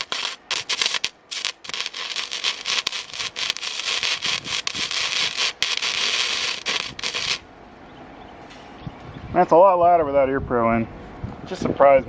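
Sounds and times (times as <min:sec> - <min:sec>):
welder arc crackling: 0:00.0 - 0:07.4.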